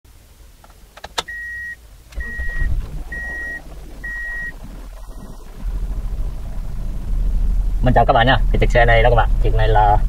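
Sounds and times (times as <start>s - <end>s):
electronic beeps: 1.3s - 5.7s
car engine running rough: 1.8s - 10.0s.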